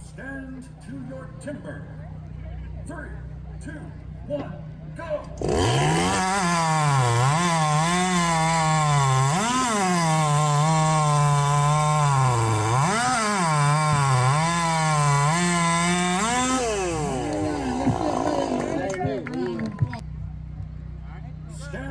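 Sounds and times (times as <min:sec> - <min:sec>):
chainsaw cutting through log: 0:05.4 - 0:19.2.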